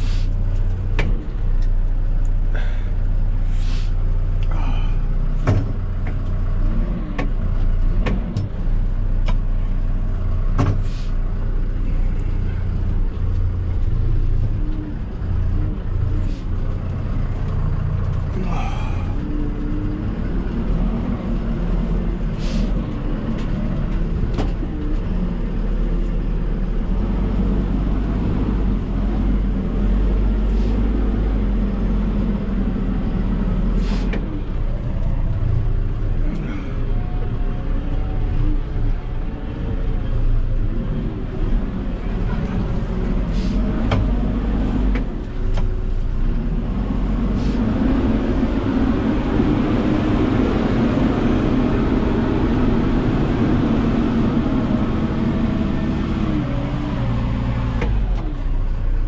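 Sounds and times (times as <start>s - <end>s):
heavy vehicle engine running: 0.0s - 59.0s
sharp clicks and knocks: 8.0s - 8.6s, 43.8s - 44.2s.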